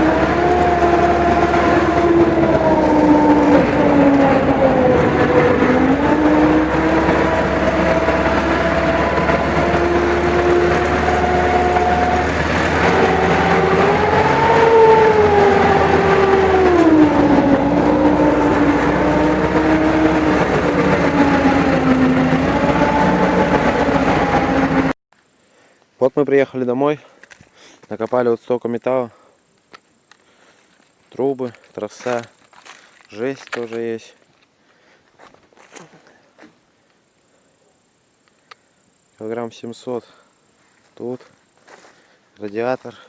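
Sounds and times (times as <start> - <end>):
vehicle engine running: 0.0 - 25.0.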